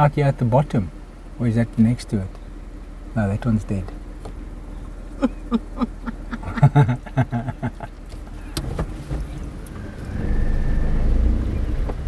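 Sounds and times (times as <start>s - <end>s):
engine and tyre rumble: 0.0s - 12.0s
vehicle knocks and rattles: 3.4s - 12.0s.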